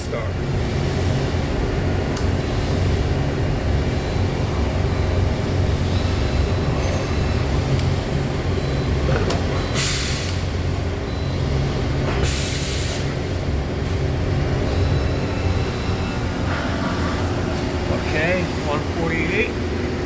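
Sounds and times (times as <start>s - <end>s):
air hiss bursts: 9.8s - 10.5s, 12.2s - 13.2s
machine hum: 13.1s - 20.0s.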